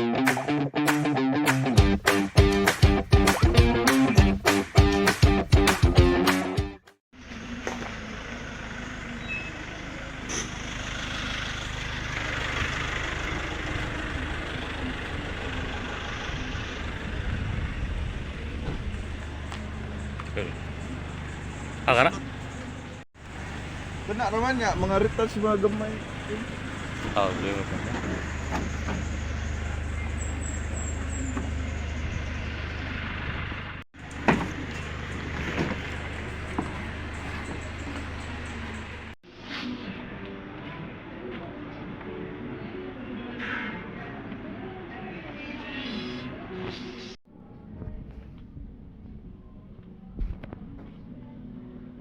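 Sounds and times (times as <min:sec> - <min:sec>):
traffic rumble: 0:07.2 - 0:52.0.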